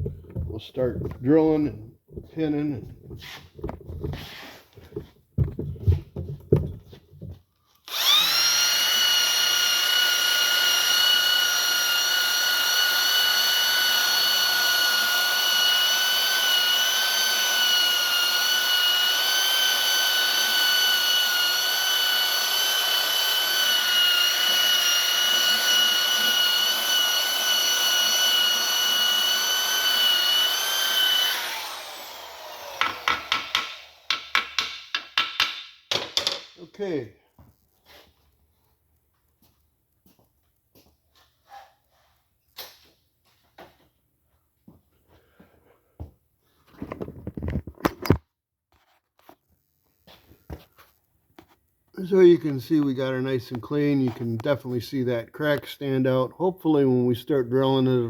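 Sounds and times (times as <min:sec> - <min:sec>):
knocks: 0:32.8 - 0:36.6.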